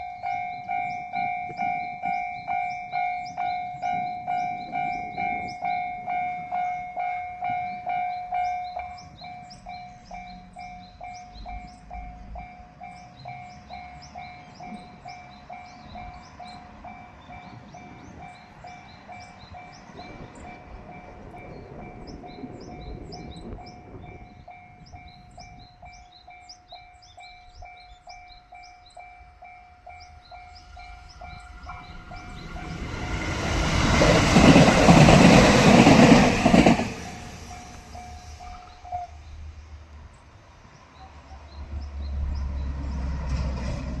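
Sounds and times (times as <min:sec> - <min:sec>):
level crossing warning bell: 0:00.0 - 0:39.2
electric train passing: 0:00.0 - 0:44.0.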